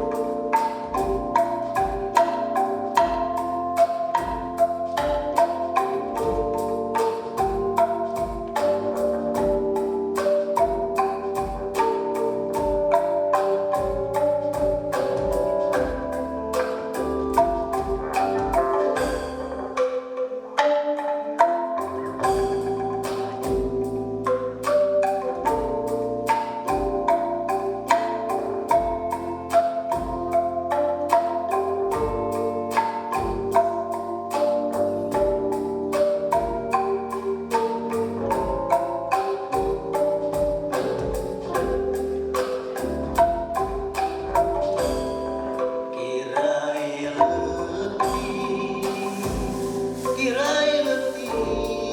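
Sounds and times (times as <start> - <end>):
deep beat: 0.0 - 19.9, 21.0 - 51.9
bamboo slats struck in notes: 0.0 - 51.9
deep low thuds: 12.4 - 13.0, 13.8 - 19.7, 22.2 - 24.6, 30.0 - 30.6, 38.0 - 45.5, 48.0 - 50.3.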